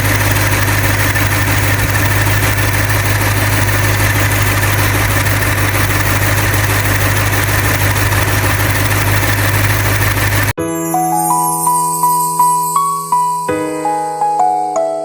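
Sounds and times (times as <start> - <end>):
car engine idling: 0.0 - 10.6.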